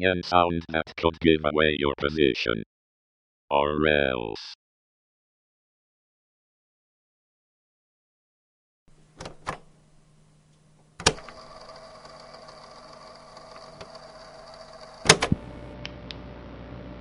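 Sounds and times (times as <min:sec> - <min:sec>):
electrical hum with high whine: 0:08.9 - 0:17.0.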